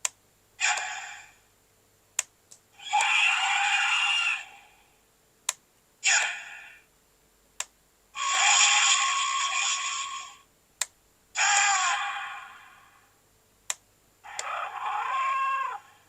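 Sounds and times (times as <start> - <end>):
toy speaker sound effects: 0.6 - 1.2, 2.8 - 4.5, 8.2 - 10.4.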